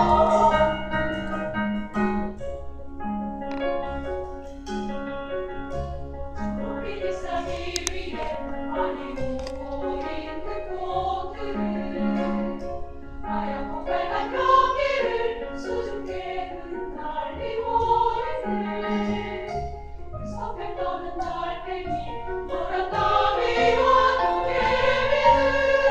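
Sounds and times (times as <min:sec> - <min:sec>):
women's choir singing: 0:00.0 - 0:01.4, 0:06.6 - 0:12.6, 0:13.2 - 0:19.6, 0:20.3 - 0:25.9
instrumental accompaniment: 0:00.0 - 0:25.9.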